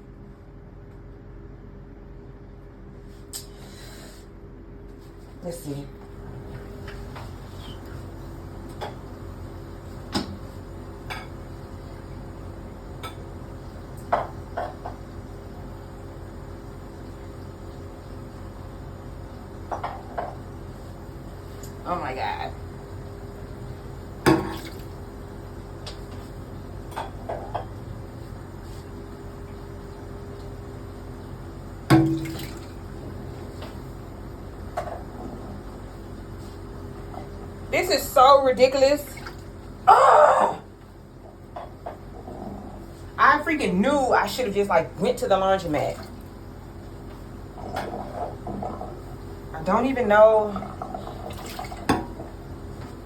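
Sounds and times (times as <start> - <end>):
steady low hum: 0.0 - 53.0
water splashing and dripping: 32.0 - 32.8, 51.3 - 51.9.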